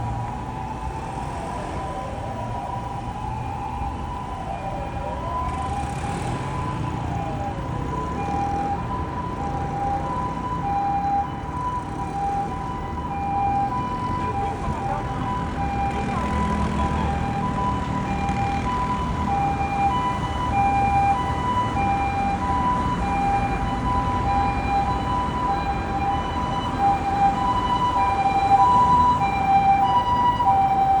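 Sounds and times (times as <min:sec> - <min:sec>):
engine and traffic rumble: 0:00.0 - 0:31.0
two-tone ambulance siren: 0:00.0 - 0:31.0
motor siren winding down: 0:19.2 - 0:31.0.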